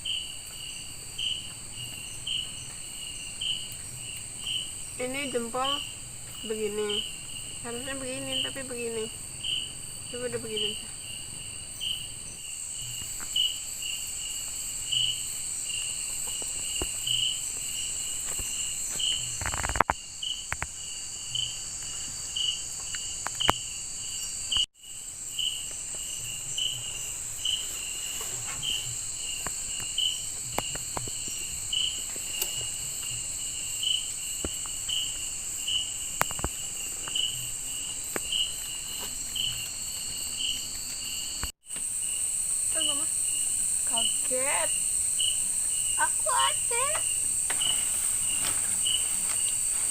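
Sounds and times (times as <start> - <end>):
cricket-like chirp: 0.0 - 49.9
insects droning: 0.0 - 49.9.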